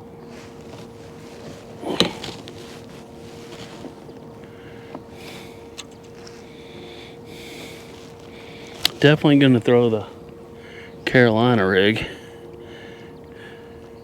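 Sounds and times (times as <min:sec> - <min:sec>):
faint steady hum: 0:00.0 - 0:14.0
light clicks: 0:00.4 - 0:06.9, 0:07.6 - 0:09.2.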